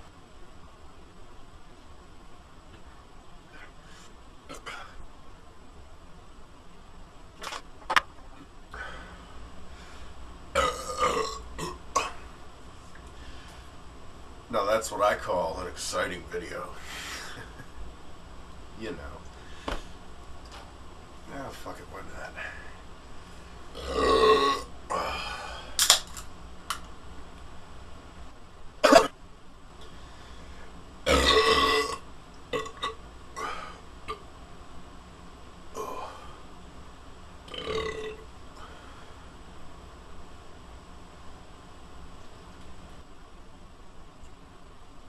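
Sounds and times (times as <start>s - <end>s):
man belching: 10.6s - 12.2s, 23.8s - 25.2s, 31.1s - 34.2s, 37.5s - 38.2s.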